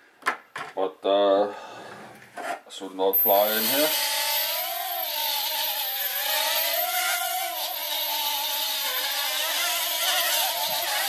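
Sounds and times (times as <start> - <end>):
quadcopter motors whining: 3.2 - 11.0.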